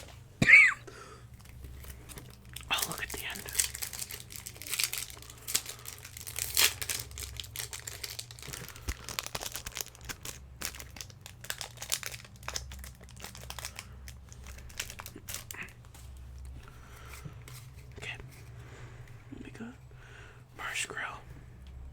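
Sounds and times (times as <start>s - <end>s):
foil wrapper crinkling and tearing: 1.4s - 17.9s.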